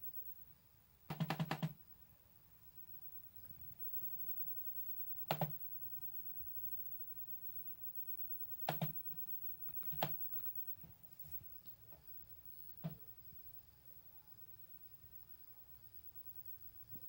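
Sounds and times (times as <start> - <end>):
laptop clicks: 1.1 - 1.8, 5.2 - 5.6, 8.6 - 10.9, 12.8 - 13.0
faint taps: 12.8 - 13.0.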